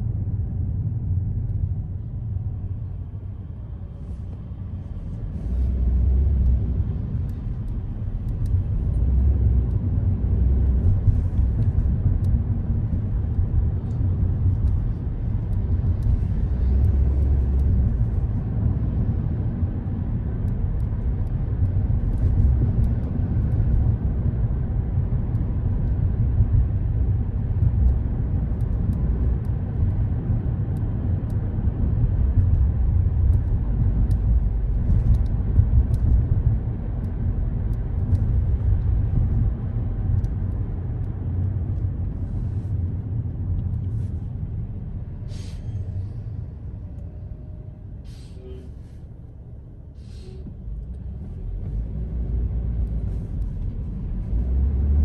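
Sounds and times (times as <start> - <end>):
car road and engine rumble: 0.0 - 55.0
faint small clicks: 7.2 - 9.0.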